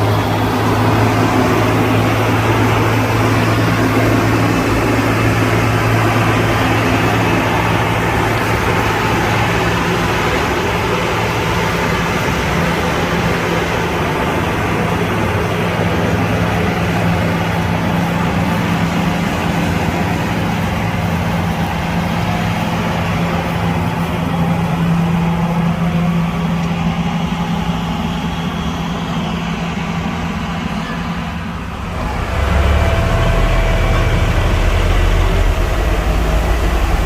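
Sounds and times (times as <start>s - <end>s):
diesel engine droning: 0.0s - 37.0s.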